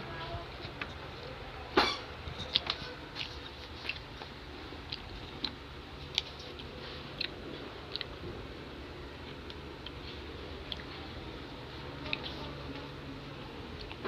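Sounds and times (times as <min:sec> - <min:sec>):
person chewing noodles: 0:02.4 - 0:08.2, 0:09.2 - 0:12.6, 0:13.6 - 0:14.0
wet mouth clicks and smacks: 0:04.8 - 0:08.1.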